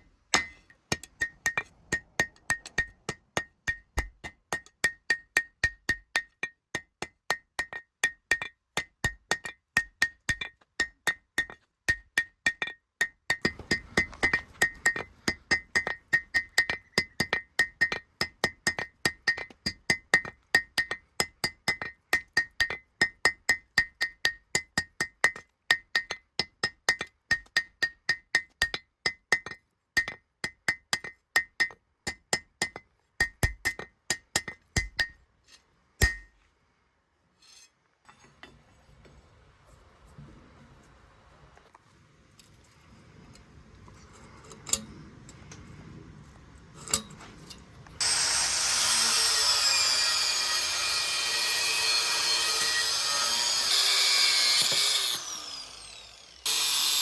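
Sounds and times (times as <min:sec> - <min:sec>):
hammer striking steel on anvil: 0:00.3 - 0:06.3.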